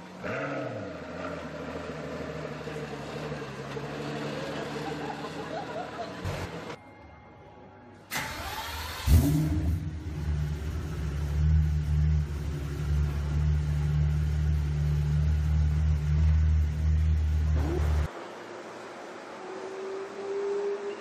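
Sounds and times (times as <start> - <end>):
car engine revving and idling: 0.0 - 6.8, 8.4 - 18.4.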